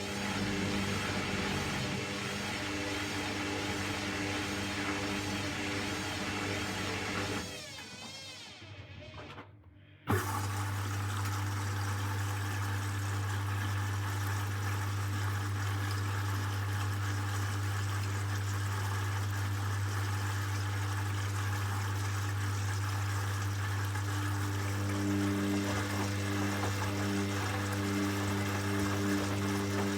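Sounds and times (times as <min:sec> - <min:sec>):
water rushing into drum: 0:10.1 - 0:29.9.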